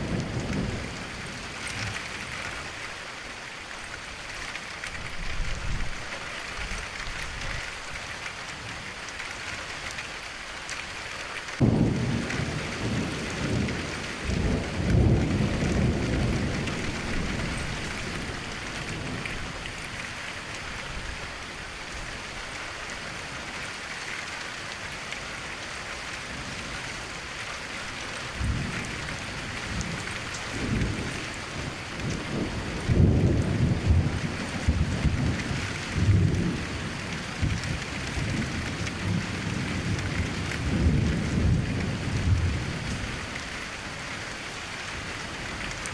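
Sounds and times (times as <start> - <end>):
thunder rumbling: 0.0 - 2.4, 11.6 - 20.0, 28.3 - 43.2
steady rain: 0.0 - 45.9.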